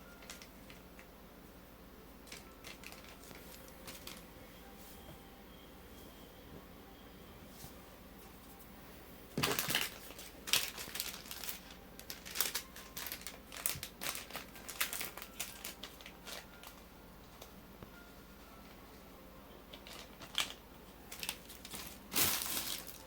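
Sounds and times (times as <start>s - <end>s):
packaging crinkling and crackling: 0.0s - 1.1s, 2.2s - 4.3s, 9.4s - 17.5s, 19.7s - 23.0s.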